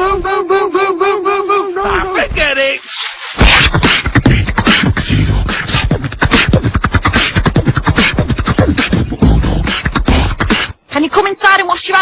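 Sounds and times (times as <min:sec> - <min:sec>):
beatboxing: 0:00.0 - 0:02.5, 0:03.3 - 0:10.8.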